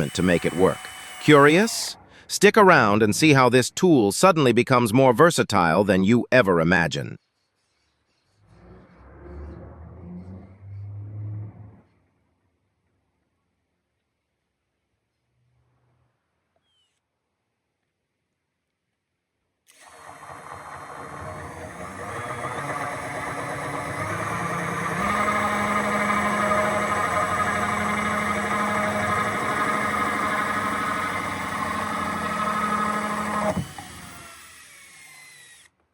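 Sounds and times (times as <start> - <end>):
power drill cutting wood: 0.0 - 2.0, 19.7 - 35.8.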